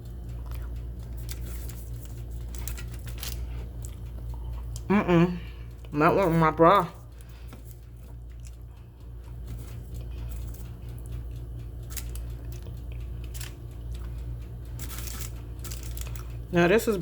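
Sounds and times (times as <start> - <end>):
person chewing cookie: 0.0 - 16.5
steady low hum: 0.0 - 17.0.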